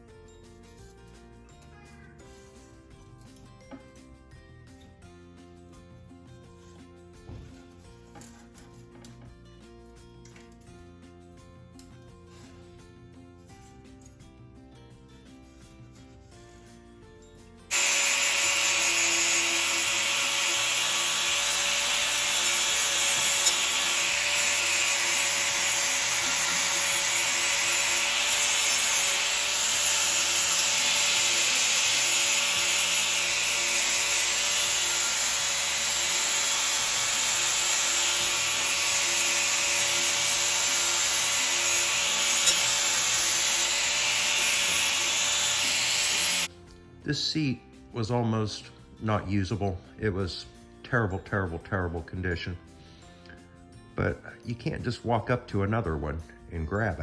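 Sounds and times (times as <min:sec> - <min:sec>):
power tool on sheet metal: 0:17.7 - 0:46.5.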